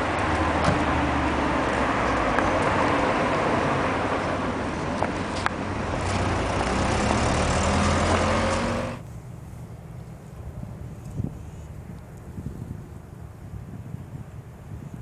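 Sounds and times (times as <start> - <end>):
engine running: 0.0 - 11.7
faint wind: 0.0 - 15.0
traffic and road noise: 0.0 - 15.0.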